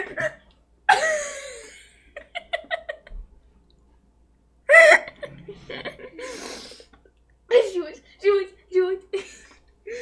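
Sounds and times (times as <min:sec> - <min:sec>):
person giggling: 0:04.7 - 0:06.6.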